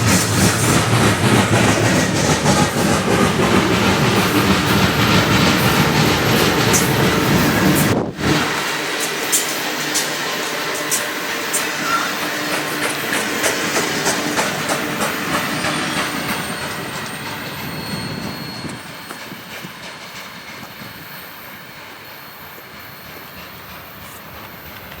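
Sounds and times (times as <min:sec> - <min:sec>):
train wheels clicking over rail joints: 0:00.0 - 0:25.0
faint wheel squeal: 0:11.6 - 0:12.2, 0:15.6 - 0:19.4.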